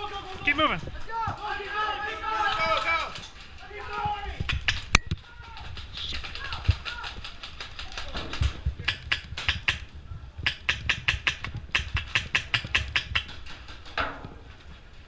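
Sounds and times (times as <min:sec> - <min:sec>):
airsoft gun snapping shots: 0:08.3 - 0:13.5.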